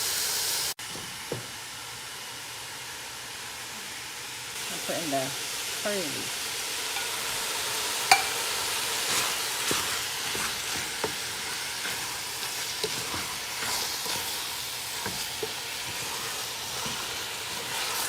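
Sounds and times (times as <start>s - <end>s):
food sizzling in hot oil: 0.0s - 18.0s
utensil clicking against pot: 8.1s - 8.4s.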